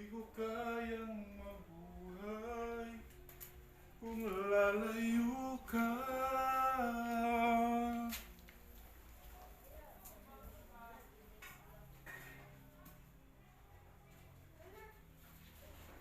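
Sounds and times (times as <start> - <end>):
person singing unaccompanied: 0.0 - 3.4, 4.0 - 8.4.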